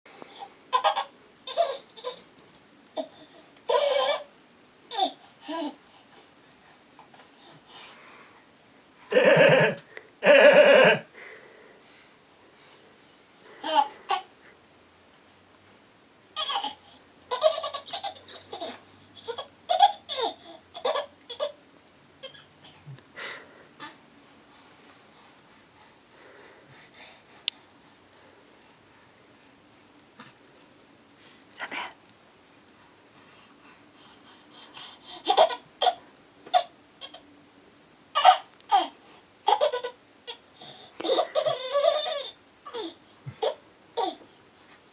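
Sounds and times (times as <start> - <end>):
baby laughing in squealing bursts: 16.4 - 21.6, 35.1 - 37.2, 41.0 - 44.2.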